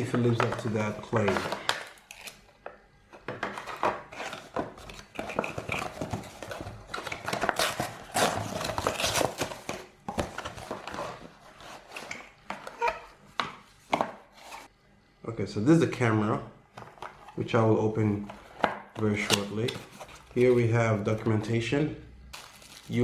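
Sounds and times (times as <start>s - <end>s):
packaging rustling and crinkling: 3.5s - 13.1s, 22.3s - 23.0s.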